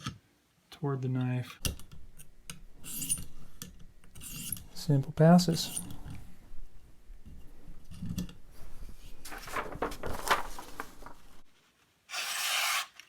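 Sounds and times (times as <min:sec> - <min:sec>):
knife scraping on sharpening plate: 0:02.8 - 0:04.6.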